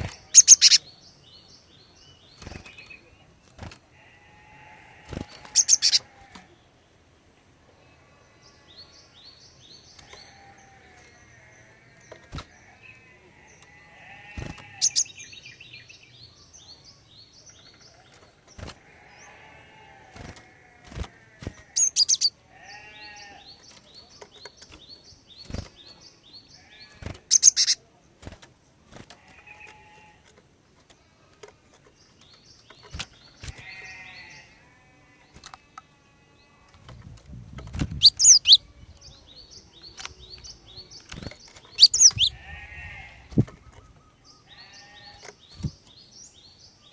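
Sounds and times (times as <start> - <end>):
tit calling: 0.1 - 0.9, 38.0 - 38.6, 41.7 - 44.0
sharp clicks: 39.8 - 42.1.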